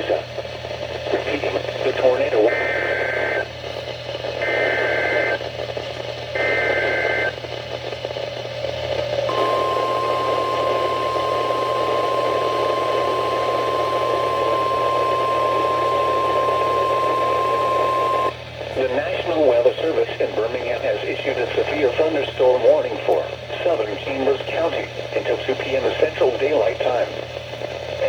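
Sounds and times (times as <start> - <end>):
radio hiss: 0.0 - 0.3, 1.0 - 3.6, 4.4 - 5.4, 6.3 - 7.4, 9.3 - 27.2
screeching data bursts: 9.3 - 18.3
steady warning alarm tone: 9.3 - 18.3.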